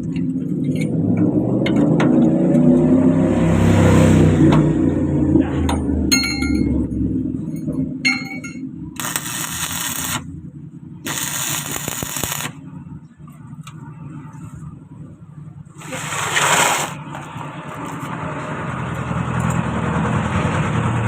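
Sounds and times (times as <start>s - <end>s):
metal clinking with ringing tone: 6.1s - 8.8s
steady low hum: 6.4s - 16.1s
arc welding crackle: 9.0s - 10.3s, 11.0s - 12.6s, 15.8s - 18.1s.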